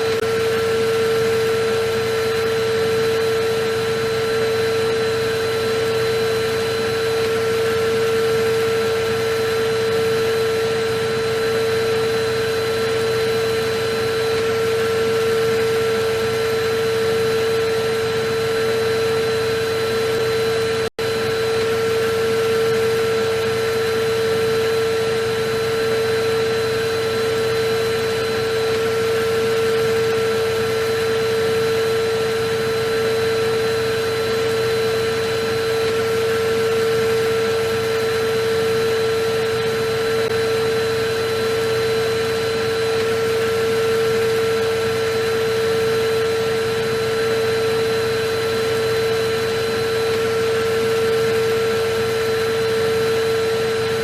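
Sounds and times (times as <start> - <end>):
vacuum cleaner running: 0.0 - 54.0.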